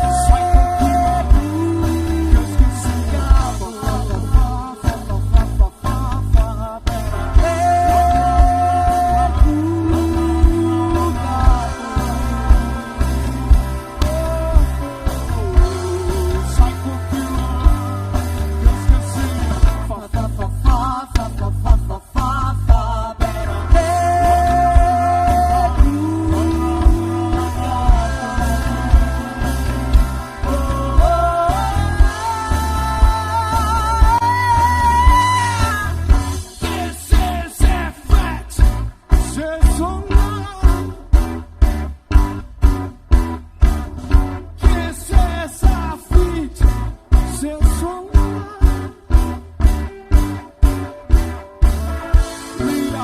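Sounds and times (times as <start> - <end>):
person singing: 0.0 - 38.6, 51.8 - 53.0
bass guitar: 0.0 - 53.0
drums: 0.0 - 53.0
electric guitar: 0.0 - 53.0
live rock band playing: 0.0 - 53.0.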